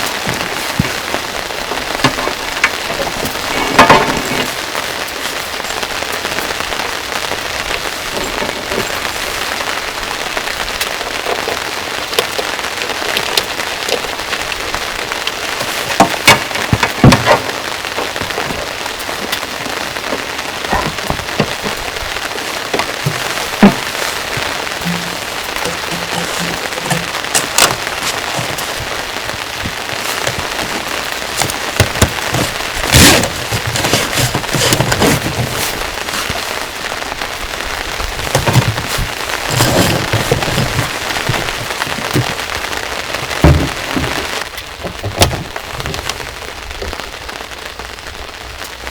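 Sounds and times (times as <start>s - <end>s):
steady rain hissing: 0.0s - 48.9s
heavy drops tapping: 15.0s - 46.3s.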